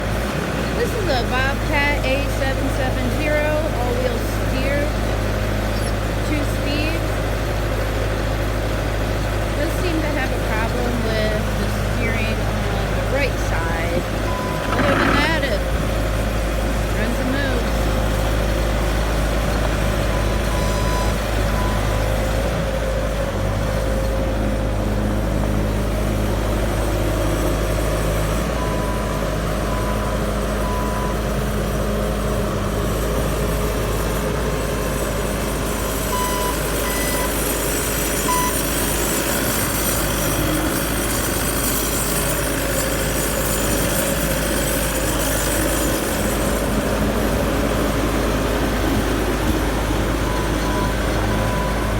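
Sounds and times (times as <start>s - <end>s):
diesel engine running: 0.0s - 51.9s
backup alarm beeps: 36.1s - 37.5s, 49.9s - 51.9s.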